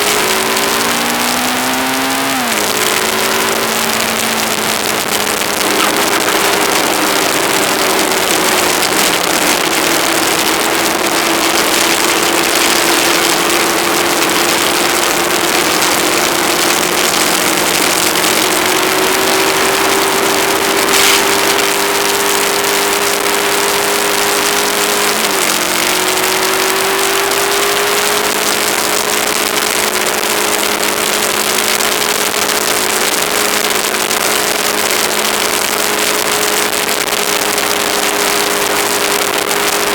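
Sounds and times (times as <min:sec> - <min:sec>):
motorcycle engine running: 0:00.0 - 0:39.9
wind noise on microphone: 0:00.0 - 0:39.9.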